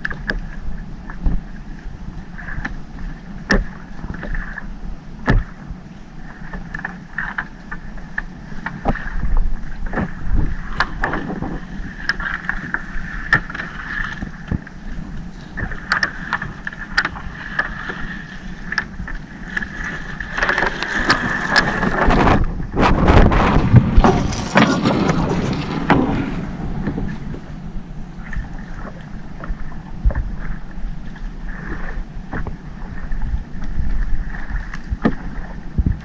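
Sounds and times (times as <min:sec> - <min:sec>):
boat engine running: 0:00.0 - 0:36.0
loud rushing noise: 0:22.8 - 0:28.0.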